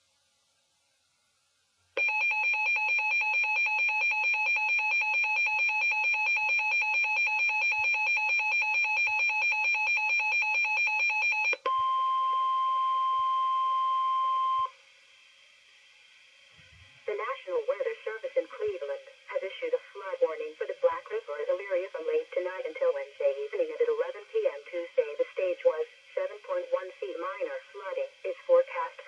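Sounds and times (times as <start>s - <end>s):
steady warning alarm tone: 2.0s - 11.6s.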